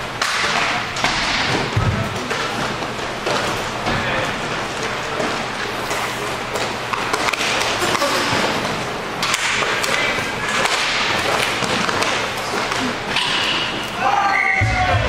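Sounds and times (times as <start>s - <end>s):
hockey sticks clacking: 0.2s - 14.4s
skate wheels rolling on rink: 0.2s - 14.5s.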